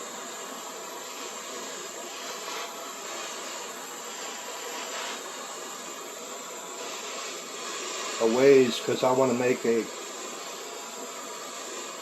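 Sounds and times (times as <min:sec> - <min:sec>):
gas torch flame hissing: 0:00.0 - 0:12.0.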